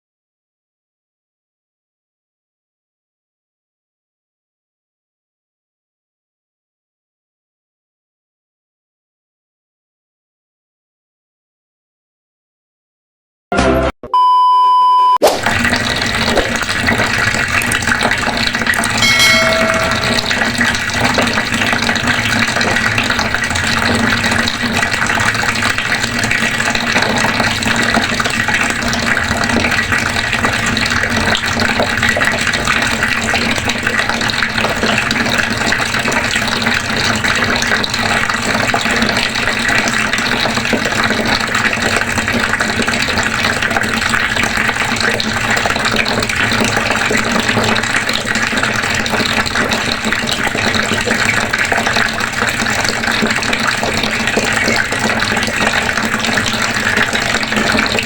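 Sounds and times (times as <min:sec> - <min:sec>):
water running from a faucet: 0:15.4 - 0:58.0.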